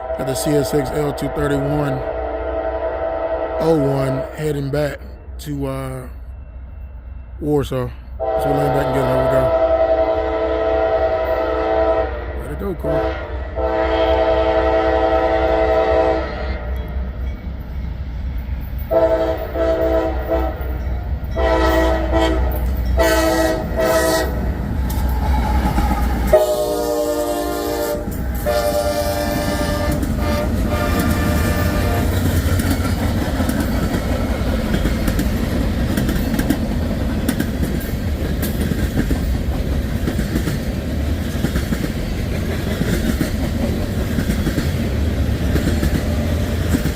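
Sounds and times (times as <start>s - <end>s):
train air horn blasts: 0.0s - 4.3s, 8.2s - 16.9s, 18.9s - 24.4s, 25.3s - 32.3s.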